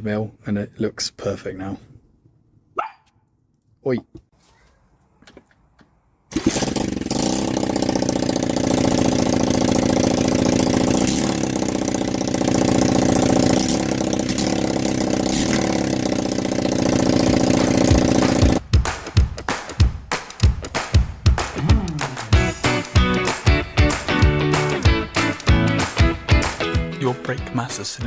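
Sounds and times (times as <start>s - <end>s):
motorbike engine starting and running: 6.3s - 18.6s.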